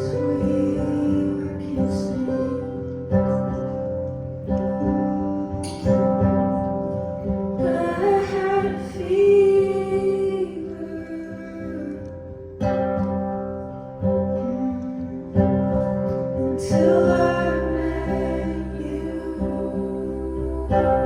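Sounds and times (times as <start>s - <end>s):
woman singing: 0.0s - 3.6s, 7.6s - 12.4s, 14.4s - 21.0s
acoustic guitar strumming: 0.0s - 21.0s.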